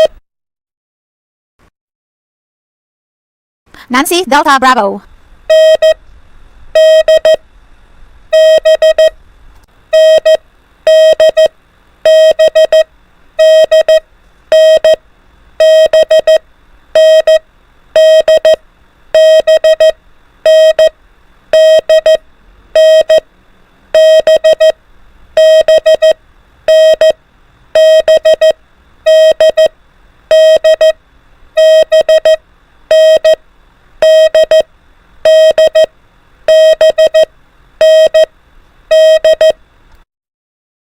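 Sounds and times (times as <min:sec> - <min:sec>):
morse code beeping tone: 0:00.0 - 0:00.2, 0:05.5 - 0:06.0, 0:06.8 - 0:07.4, 0:08.3 - 0:09.1, 0:09.9 - 0:15.0, 0:15.6 - 0:16.4, 0:17.0 - 0:17.4, 0:18.0 - 0:18.6, 0:19.2 - 0:20.9, 0:21.5 - 0:22.2, 0:22.8 - 0:23.2, 0:24.0 - 0:24.8, 0:25.4 - 0:27.2, 0:27.8 - 0:29.7, 0:30.3 - 0:31.0, 0:31.6 - 0:33.4, 0:34.0 - 0:34.7, 0:35.3 - 0:35.9, 0:36.5 - 0:38.3, 0:38.9 - 0:39.6.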